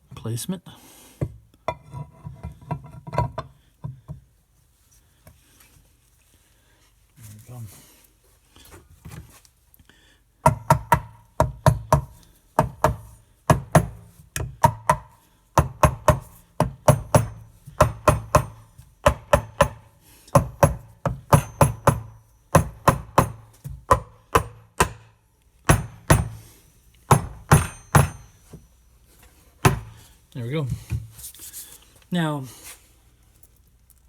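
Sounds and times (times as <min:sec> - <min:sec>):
hammer tapping metal cover: 0:10.5 - 0:25.1, 0:25.7 - 0:26.4, 0:27.1 - 0:28.5, 0:29.6 - 0:30.0.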